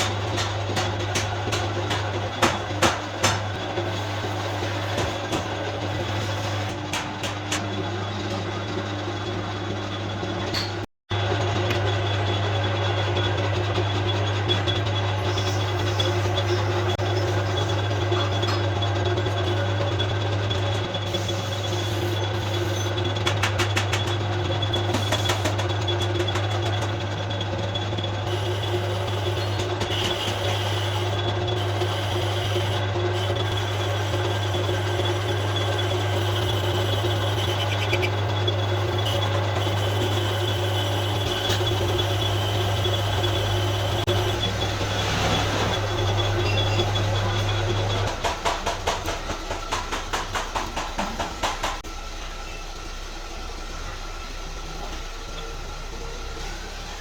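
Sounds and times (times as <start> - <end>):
rapid sharp knocks: 0.0 - 3.6, 48.0 - 51.8.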